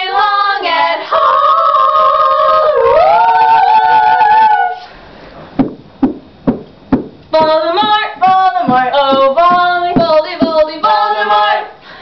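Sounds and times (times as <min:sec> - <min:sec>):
voices singing a cappella: 0:00.0 - 0:04.9, 0:07.4 - 0:12.0.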